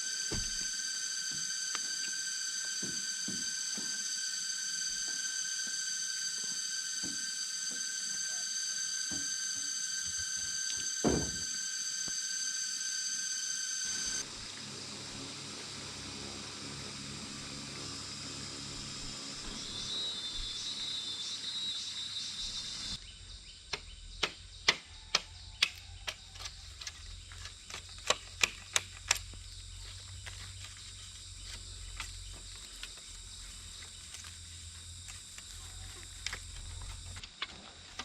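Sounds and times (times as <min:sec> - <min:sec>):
insects chirring: 0:00.0 - 0:38.0
sharp knocks: 0:11.0 - 0:11.5.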